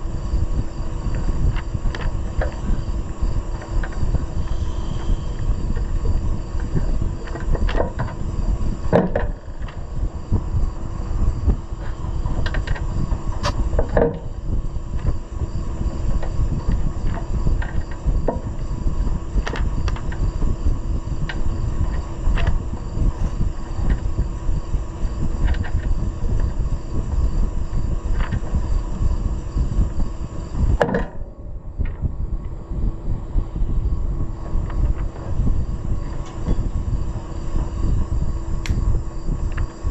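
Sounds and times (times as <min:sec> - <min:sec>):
low rumbling hum: 0:00.0 - 0:39.9.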